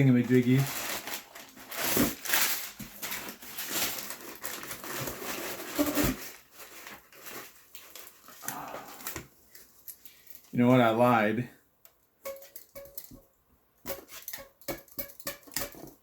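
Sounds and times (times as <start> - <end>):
packing paper rustling and crinkling: 0.0 - 9.8.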